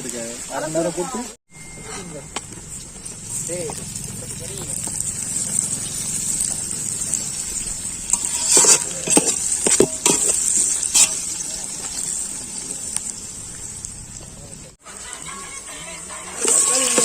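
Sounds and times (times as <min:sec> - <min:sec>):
food sizzling in hot oil: 0:00.0 - 0:17.0
ladle scraping a pot: 0:08.1 - 0:12.2, 0:16.4 - 0:17.0.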